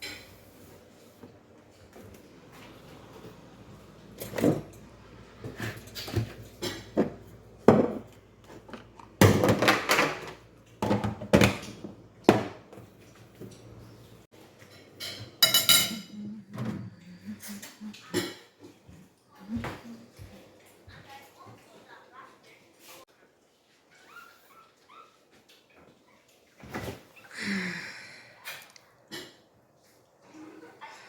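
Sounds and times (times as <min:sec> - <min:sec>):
dishes and cutlery clattering: 0:00.0 - 0:00.7, 0:04.2 - 0:13.8, 0:14.4 - 0:18.9.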